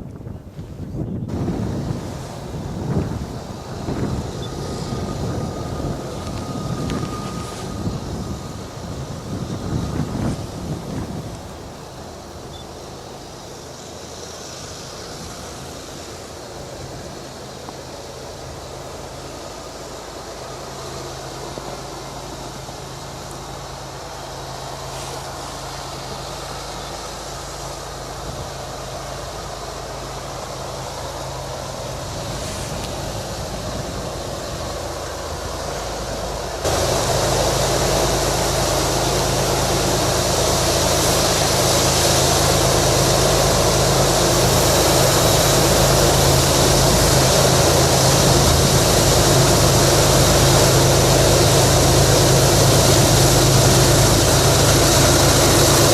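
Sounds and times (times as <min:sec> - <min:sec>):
diesel locomotive engine drone: 0:00.0 - 0:55.9.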